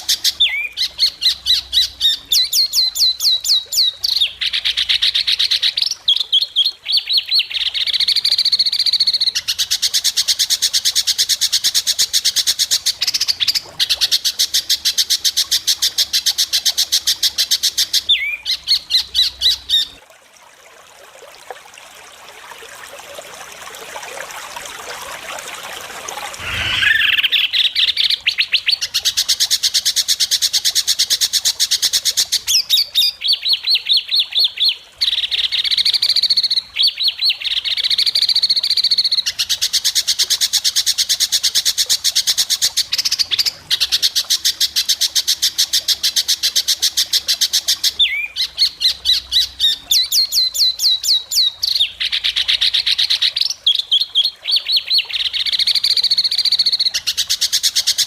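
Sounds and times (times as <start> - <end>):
songbird singing fast notes: 26.4 - 28.8.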